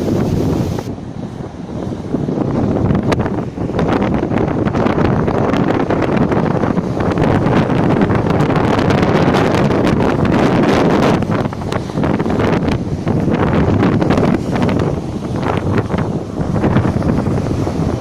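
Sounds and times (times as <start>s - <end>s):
storm wind buffeting microphone: 0.0s - 18.0s.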